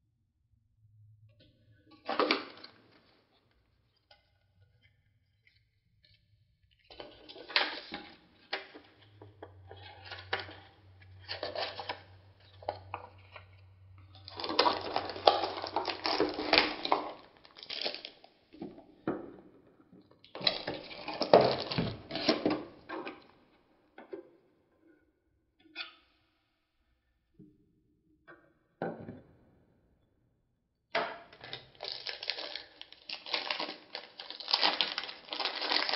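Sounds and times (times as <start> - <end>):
packaging rustling and crinkling: 2.1 - 3.0, 7.0 - 8.9, 9.8 - 13.4, 14.2 - 18.2, 20.4 - 22.7, 31.5 - 35.9.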